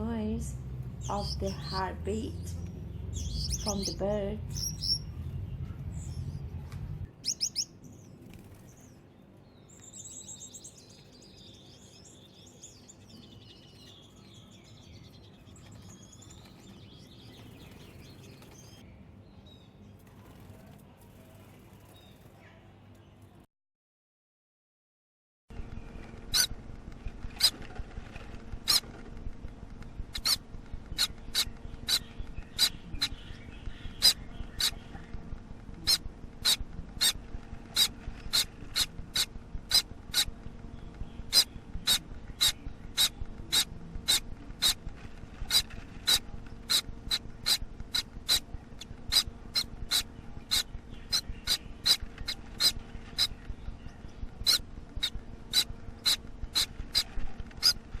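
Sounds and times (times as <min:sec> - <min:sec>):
steady low hum: 0:00.0 - 0:22.3, 0:25.5 - 0:58.0
chick begging calls: 0:01.0 - 0:05.1, 0:30.1 - 0:35.0, 0:41.3 - 0:44.8, 0:45.5 - 0:57.8.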